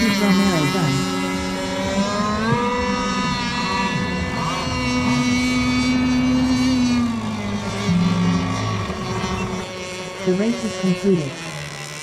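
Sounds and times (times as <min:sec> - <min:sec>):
model boat engines whining: 0:00.0 - 0:12.0.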